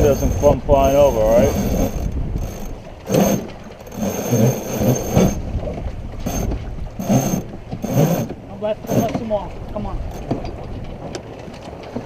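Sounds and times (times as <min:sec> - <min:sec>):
wind buffeting microphone: 0:00.0 - 0:12.0
rustles and knocks from boat gear: 0:01.7 - 0:12.0.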